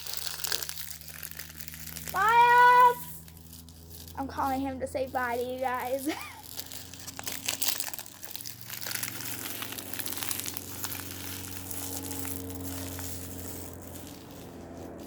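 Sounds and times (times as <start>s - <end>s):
plastic and paper packaging crinkling: 0.0s - 15.0s
steady low hum: 0.0s - 15.0s.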